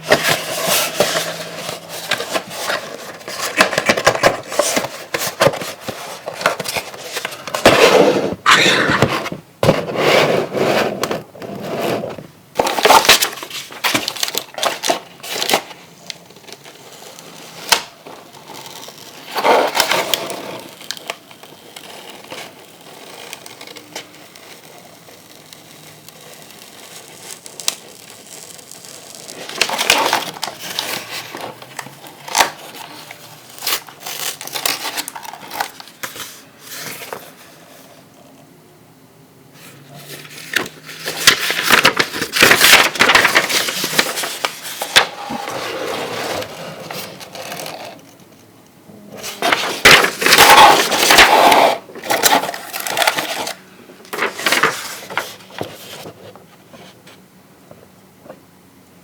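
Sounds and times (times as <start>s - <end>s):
toy packaging being opened: 0.0s - 7.7s, 12.6s - 22.6s, 23.3s - 37.5s, 40.0s - 48.2s, 49.2s - 56.0s.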